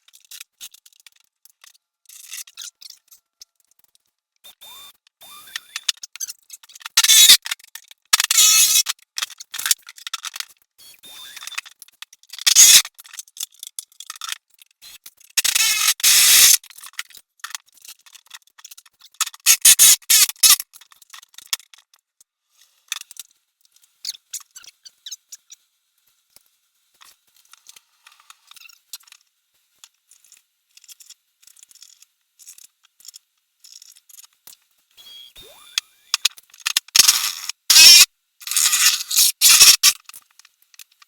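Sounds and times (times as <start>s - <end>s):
scraping cutting noises: 36.2s - 40.1s.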